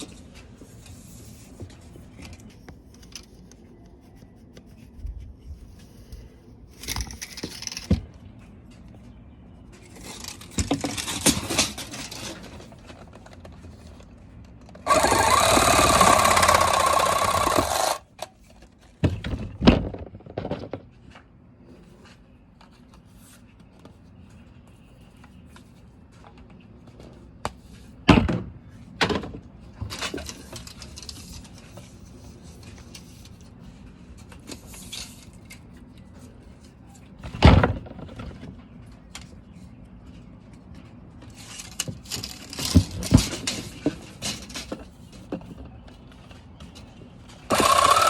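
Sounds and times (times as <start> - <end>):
loud steady rasping noise: 14.8 - 18.0, 47.5 - 48.0
plastic tubes knocking and clattering: 14.8 - 18.0, 18.9 - 20.9, 41.4 - 45.6.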